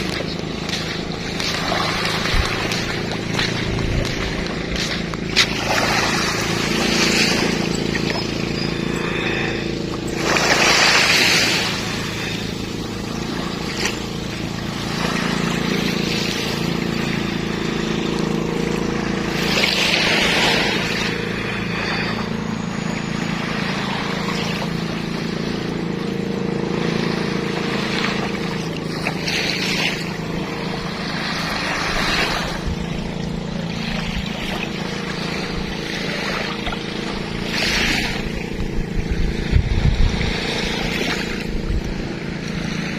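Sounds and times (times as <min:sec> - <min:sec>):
boat engine hum: 0:00.0 - 0:42.9
sea waves washing in: 0:00.0 - 0:42.9.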